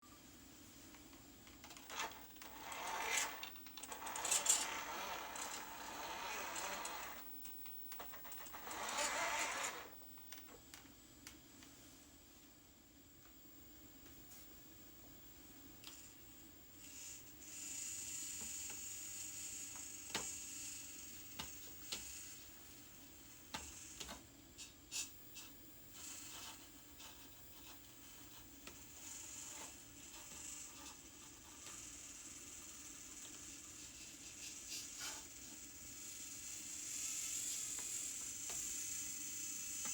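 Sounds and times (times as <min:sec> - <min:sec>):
small clicks and scratching: 0:00.9 - 0:11.7
small electric motor whining: 0:01.9 - 0:10.0, 0:28.8 - 0:39.9.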